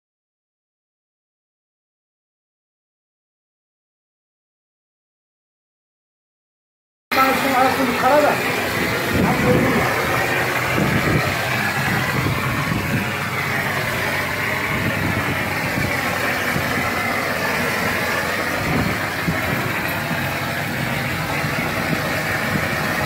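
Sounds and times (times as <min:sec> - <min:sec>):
plaster-spraying machine running: 0:07.1 - 0:23.0.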